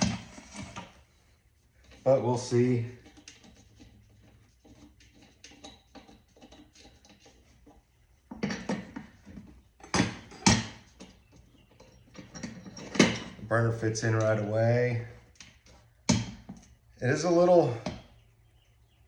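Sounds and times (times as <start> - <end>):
metal scraping and clunking: 0.0 - 1.1, 1.8 - 14.6.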